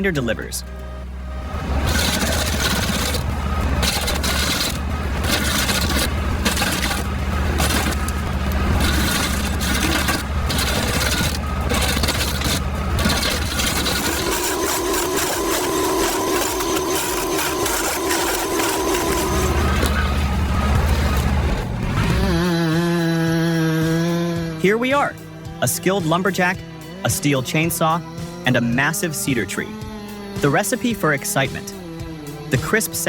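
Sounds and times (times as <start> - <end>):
low engine drone: 0.0 - 33.0
stump grinder grinding wood: 1.4 - 22.9.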